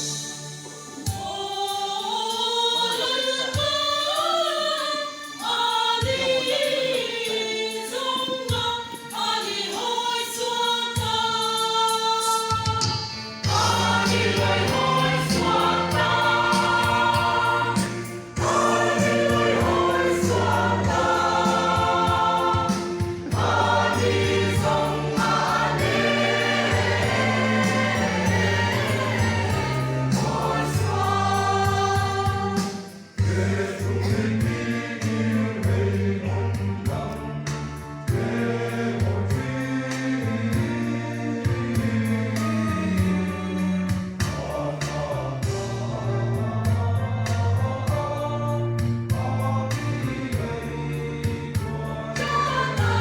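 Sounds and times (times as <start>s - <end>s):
choir singing gospel song: 0.0s - 53.0s
bass and steady beat: 13.5s - 53.0s.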